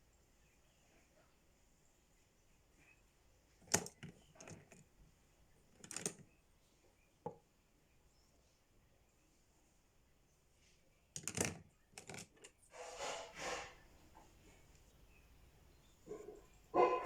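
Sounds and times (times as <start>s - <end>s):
hard objects clacking: 5.8s - 6.2s, 11.2s - 12.6s.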